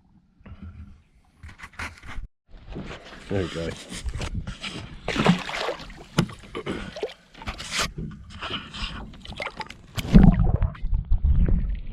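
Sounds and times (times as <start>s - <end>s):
knocks and clatter on boat: 6.1s - 6.6s.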